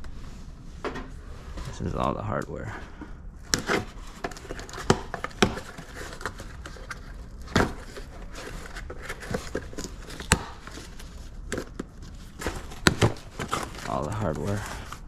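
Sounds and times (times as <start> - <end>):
packaging rustling: 3.4 - 15.0.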